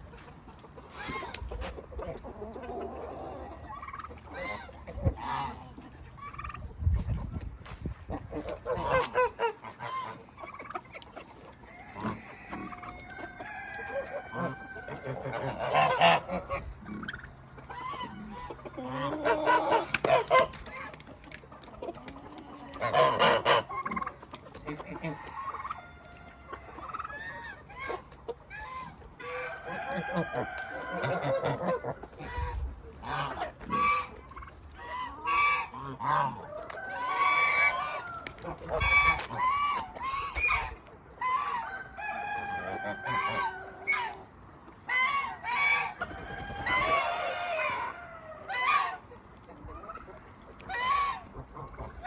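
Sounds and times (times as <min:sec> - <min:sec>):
geese honking: 0:00.0 - 0:06.7, 0:08.0 - 0:52.0
hens clucking: 0:00.0 - 0:52.0
roosters crowing: 0:11.6 - 0:16.6, 0:17.8 - 0:20.6, 0:29.2 - 0:32.2, 0:34.9 - 0:49.1.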